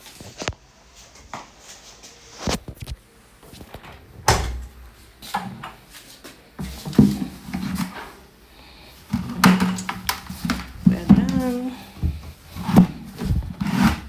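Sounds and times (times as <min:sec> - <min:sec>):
washing machine door click: 0:04.3 - 0:04.8.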